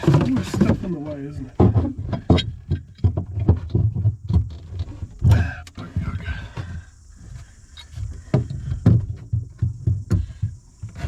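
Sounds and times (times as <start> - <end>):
man grunting and straining: 5.2 - 6.9.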